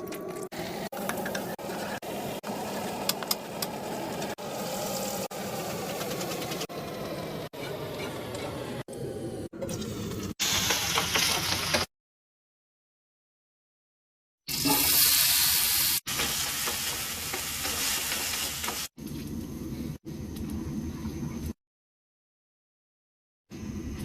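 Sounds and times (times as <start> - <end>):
food sizzling in a pan: 14.5 - 19.0.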